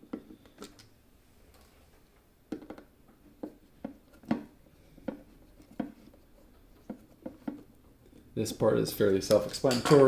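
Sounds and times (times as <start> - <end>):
plastic parts clicking and knocking: 0.0 - 0.9, 2.5 - 8.0.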